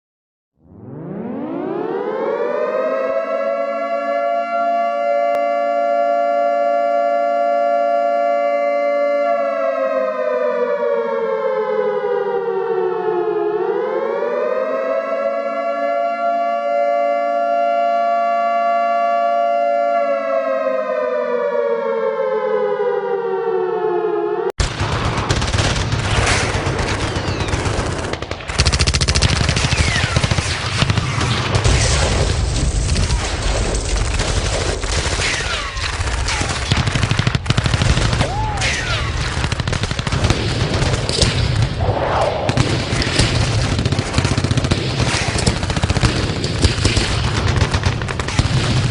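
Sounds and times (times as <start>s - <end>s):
civil defense siren wailing: 0.6s - 24.6s
dense gunfire: 24.6s - 48.9s.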